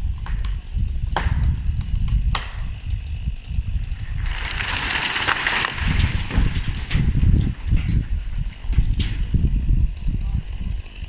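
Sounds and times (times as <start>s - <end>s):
wood cracking with sharp snaps: 0.2s - 2.7s, 3.8s - 7.9s
tree crashing through branches: 3.7s - 9.4s.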